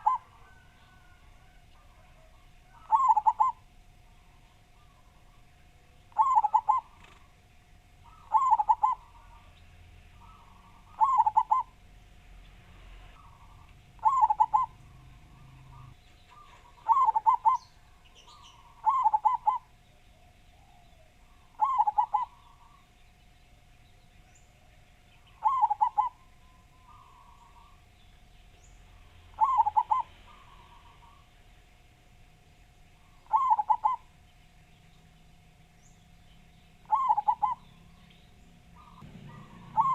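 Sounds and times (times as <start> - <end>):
dove cooing: 0.0 - 7.4, 8.0 - 9.6, 10.2 - 11.8, 13.2 - 22.9, 25.2 - 27.8, 29.0 - 31.4, 33.0 - 34.2, 36.8 - 37.8, 38.7 - 39.9
faint steady tone: 0.0 - 39.9.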